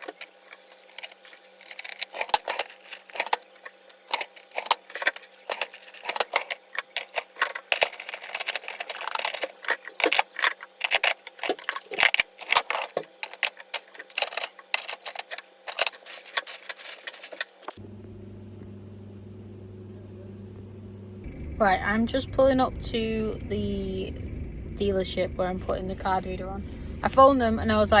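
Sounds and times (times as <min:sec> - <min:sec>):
rapid irregular clicking and crackling: 0:00.0 - 0:17.8
car cabin drone: 0:17.8 - 0:28.0.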